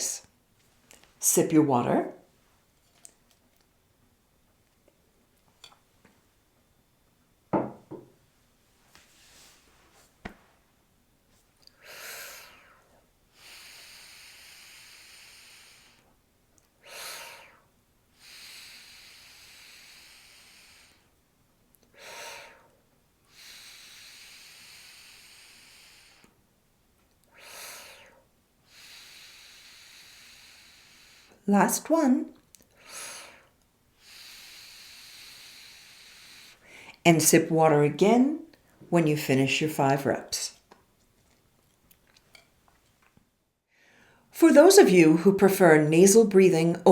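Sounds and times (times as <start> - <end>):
breathing through pursed lips: 11.7 - 16.2, 16.8 - 21.2, 21.8 - 26.4, 27.2 - 31.4, 32.6 - 37.0, 43.7 - 44.3.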